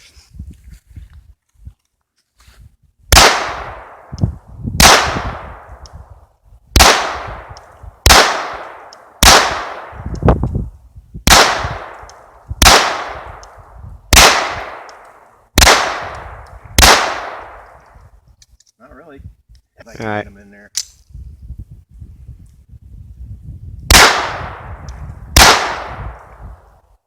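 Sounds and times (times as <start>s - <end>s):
pistol shots with echo: 3.1s - 4.1s, 4.8s - 5.7s, 6.8s - 10.0s, 11.3s - 13.5s, 14.1s - 15.0s, 15.6s - 17.7s, 23.9s - 24.7s, 25.4s - 26.4s.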